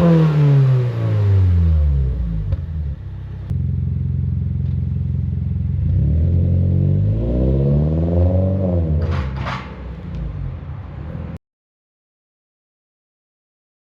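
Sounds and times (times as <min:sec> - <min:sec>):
car engine idling and revving: 0:00.0 - 0:11.4.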